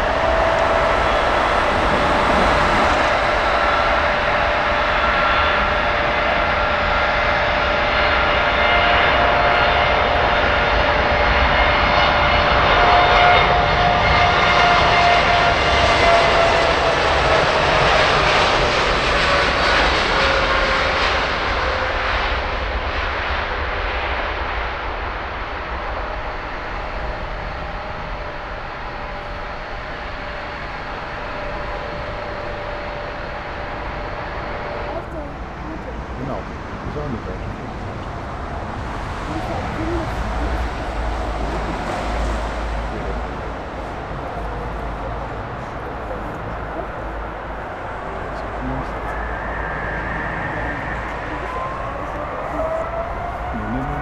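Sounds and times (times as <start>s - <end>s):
jet engines passing by: 0.0s - 54.0s.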